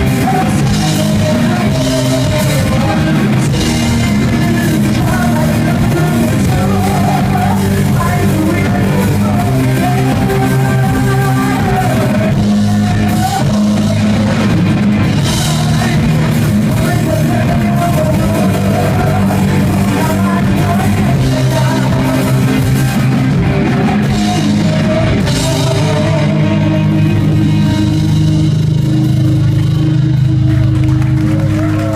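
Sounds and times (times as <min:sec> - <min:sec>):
bass guitar: 0:00.0 - 0:31.9
electric guitar: 0:00.0 - 0:31.9
person singing: 0:00.0 - 0:31.9.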